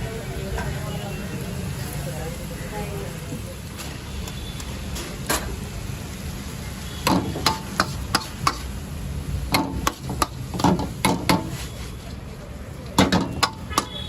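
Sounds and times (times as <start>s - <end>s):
low street rumble: 0.0s - 14.0s
metal cooking utensils clanking: 9.5s - 11.7s, 12.9s - 14.0s.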